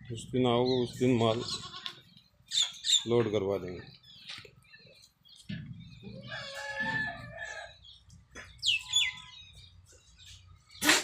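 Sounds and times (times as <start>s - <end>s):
bird chirps: 0.6s - 11.0s
rooster crowing: 6.2s - 7.8s.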